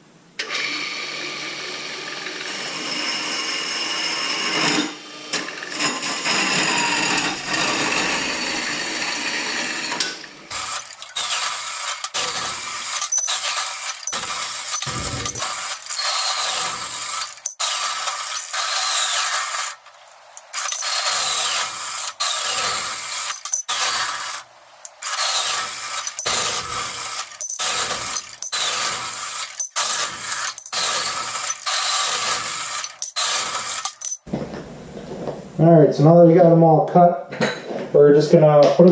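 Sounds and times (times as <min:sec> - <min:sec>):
metallic clicking and handling knocks: 0:12.9 - 0:16.0, 0:17.2 - 0:17.6, 0:20.4 - 0:21.0, 0:23.2 - 0:23.9, 0:26.0 - 0:26.4, 0:27.2 - 0:28.8, 0:29.4 - 0:31.8, 0:32.8 - 0:34.3.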